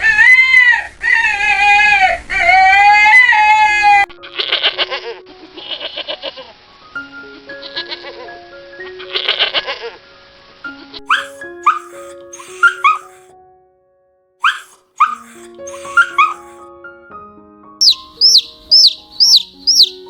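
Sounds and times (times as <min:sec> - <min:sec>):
light background music: 0:03.4 - 0:20.0
short high rising yelps: 0:11.1 - 0:13.2, 0:14.4 - 0:16.5, 0:17.8 - 0:20.0.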